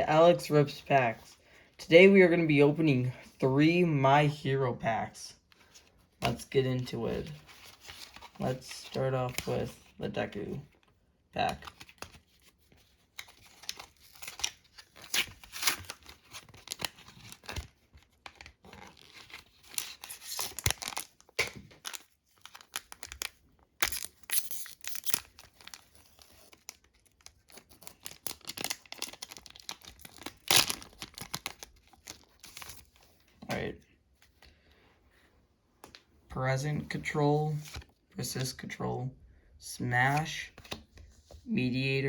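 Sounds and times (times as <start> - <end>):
wrapper tearing and crinkling: 18.6 - 33.0.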